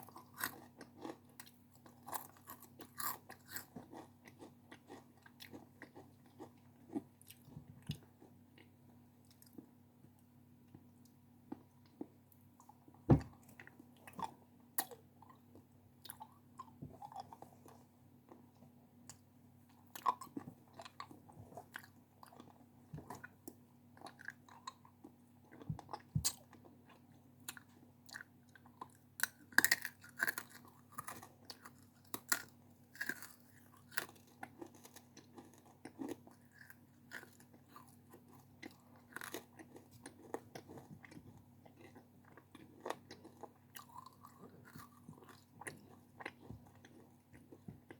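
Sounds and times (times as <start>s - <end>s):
crunchy snack chewing: 0.0s - 8.7s, 24.0s - 47.9s.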